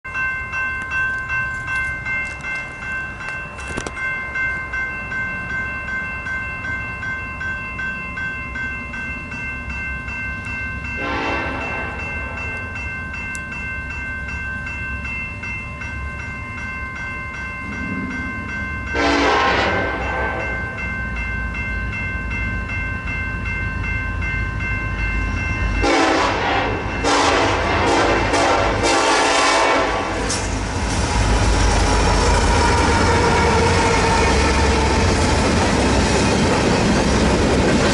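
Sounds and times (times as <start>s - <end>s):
steady high-pitched tone: 0.1s - 26.0s
freight train rumble: 0.1s - 37.9s
train air horn: 11.0s - 12.0s, 19.0s - 20.5s, 25.8s - 30.4s.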